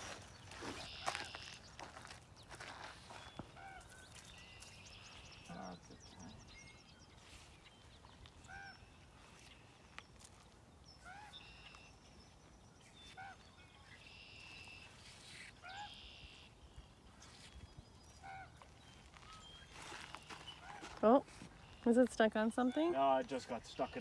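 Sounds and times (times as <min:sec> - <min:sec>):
high thin bird chirps: 0:12.8 - 0:16.6.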